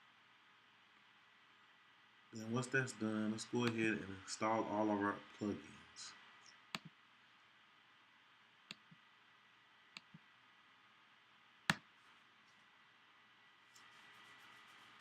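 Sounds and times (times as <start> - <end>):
faint steady hiss: 0.0 - 15.0
computer mouse clicks: 6.7 - 7.0, 8.7 - 9.0, 9.9 - 10.2.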